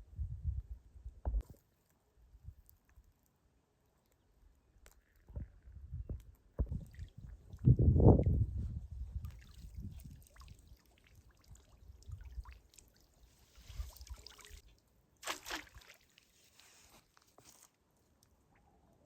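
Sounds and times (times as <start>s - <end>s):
water trickling and splashing: 9.1s - 16.6s.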